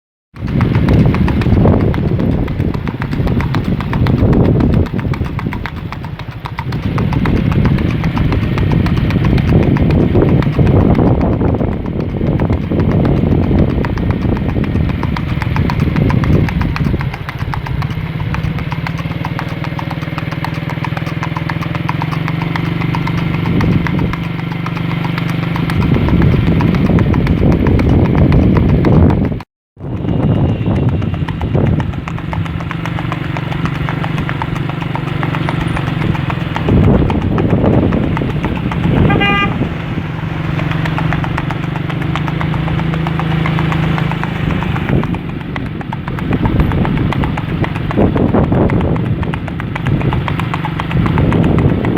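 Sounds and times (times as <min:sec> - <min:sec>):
rapid hoofbeats: 0:00.4 - 0:51.9
engine drone: 0:30.1 - 0:46.8.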